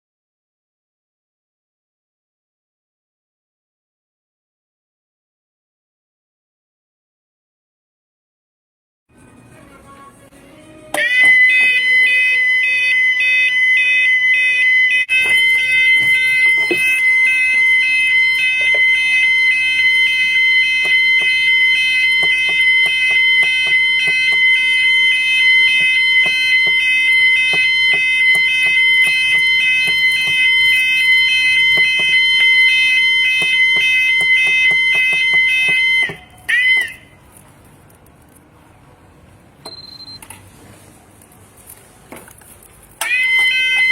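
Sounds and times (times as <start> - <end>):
fire alarm warbling tone: 11.0 - 37.2, 43.0 - 43.9.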